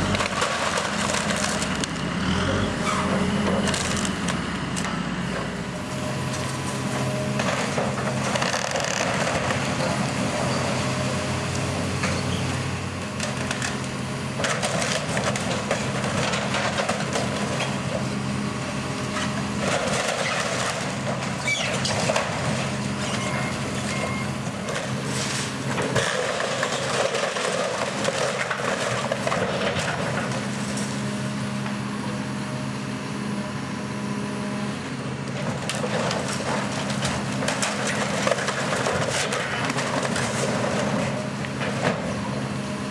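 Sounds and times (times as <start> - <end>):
wood cracking and splintering: 0.0 - 2.7, 3.5 - 4.9, 7.4 - 10.1, 14.4 - 18.0, 24.5 - 31.0, 35.3 - 42.1
heavy machine engine running: 0.0 - 42.9.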